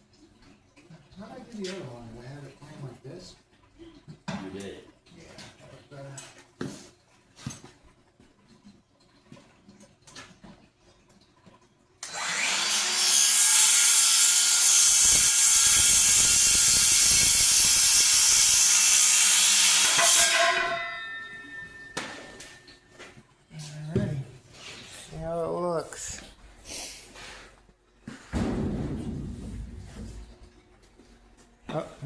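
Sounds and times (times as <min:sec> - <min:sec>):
power saw cutting wood: 0:12.0 - 0:21.6.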